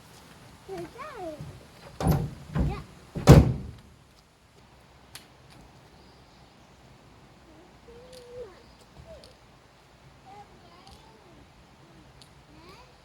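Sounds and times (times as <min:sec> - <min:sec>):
heavy thumps: 0:01.3 - 0:03.8.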